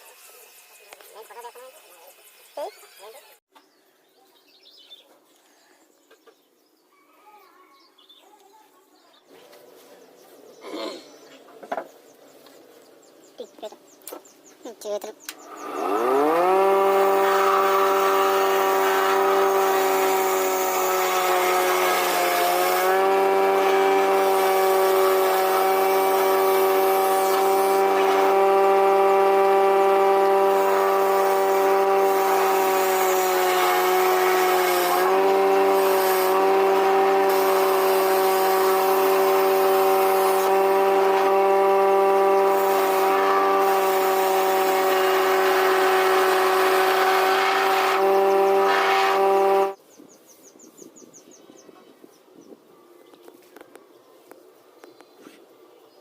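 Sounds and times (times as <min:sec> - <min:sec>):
power tool cutting wood: 0:15.3 - 0:49.8.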